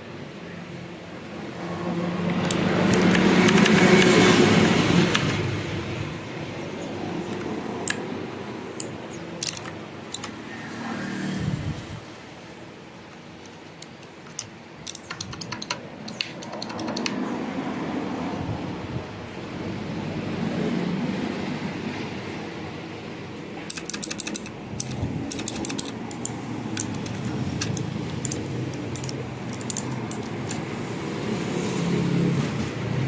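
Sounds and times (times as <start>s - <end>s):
mechanical keyboard keys clicking: 2.3s - 4.4s, 8.7s - 10.4s, 13.4s - 17.2s, 23.7s - 30.8s.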